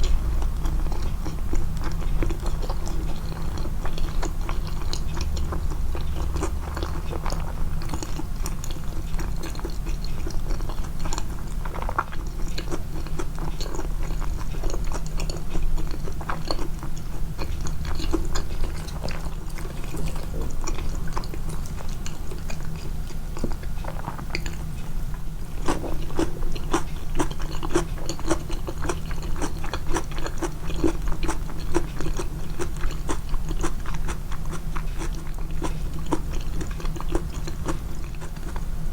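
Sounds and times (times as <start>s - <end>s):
chewing and biting food: 0.0s - 38.9s.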